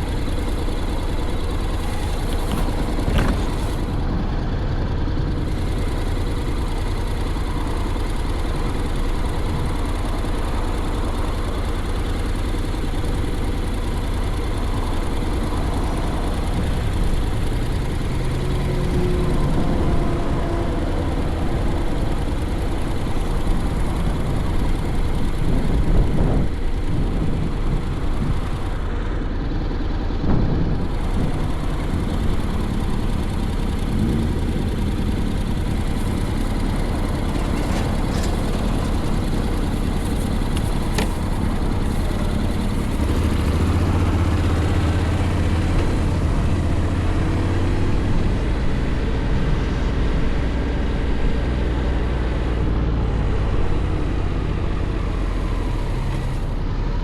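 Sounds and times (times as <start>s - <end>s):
motorcycle engine rumbling: 0.0s - 57.0s
wind noise: 14.9s - 28.6s, 30.1s - 50.7s.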